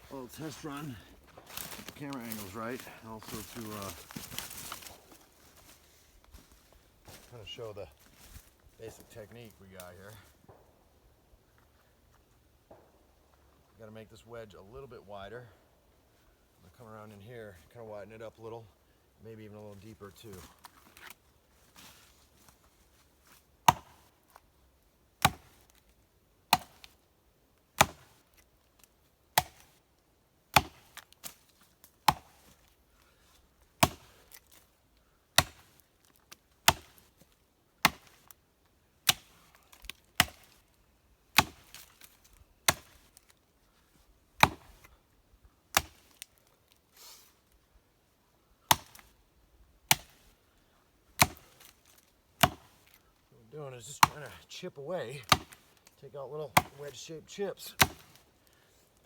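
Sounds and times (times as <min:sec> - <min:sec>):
axe chopping tree trunk: 0:23.6 - 0:24.1, 0:25.2 - 0:25.8, 0:26.5 - 0:27.0, 0:27.8 - 0:28.3, 0:29.3 - 0:29.8, 0:30.5 - 0:31.4, 0:32.0 - 0:32.6, 0:33.8 - 0:34.6, 0:35.3 - 0:35.8, 0:36.6 - 0:37.2, 0:37.8 - 0:38.3, 0:39.0 - 0:40.6, 0:41.3 - 0:43.2, 0:44.4 - 0:45.0, 0:45.7 - 0:46.2, 0:48.6 - 0:49.1, 0:49.9 - 0:50.3, 0:51.1 - 0:53.0, 0:53.8 - 0:54.4, 0:55.2 - 0:58.3.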